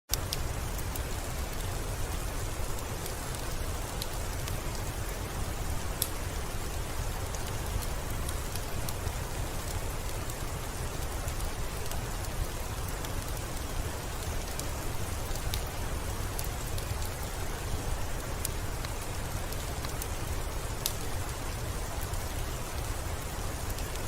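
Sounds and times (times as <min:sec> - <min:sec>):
steady rain falling: 0:00.1 - 0:24.0.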